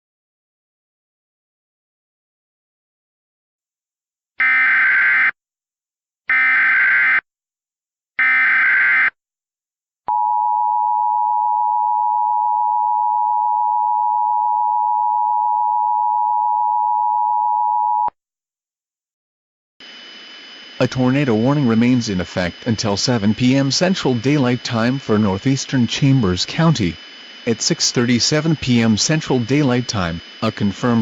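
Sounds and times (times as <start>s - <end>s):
screeching digital data bursts: 19.8s - 31.0s
steady attention signal tone: 19.8s - 31.0s.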